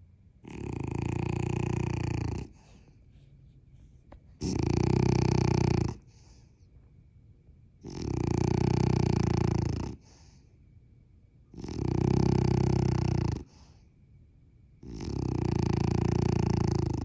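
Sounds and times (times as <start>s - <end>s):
fluttering snores: 0.4s - 2.8s, 4.4s - 6.3s, 7.8s - 10.3s, 11.6s - 13.8s, 14.8s - 17.0s.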